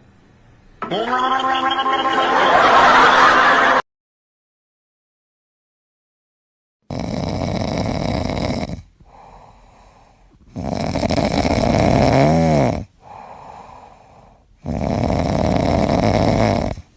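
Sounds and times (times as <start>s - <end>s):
person snoring: 6.9s - 16.9s
quiet breath: 8.8s - 10.6s, 13.0s - 14.6s.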